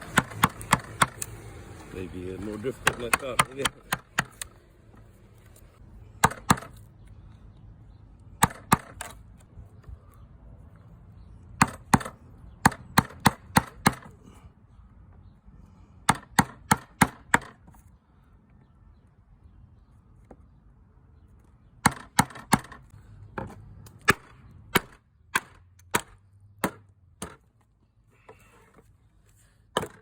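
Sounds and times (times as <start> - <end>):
hammering on wood: 0.0 - 1.3, 2.8 - 4.4, 6.2 - 6.7, 8.4 - 9.1, 11.6 - 14.1, 16.0 - 17.6, 21.8 - 27.4.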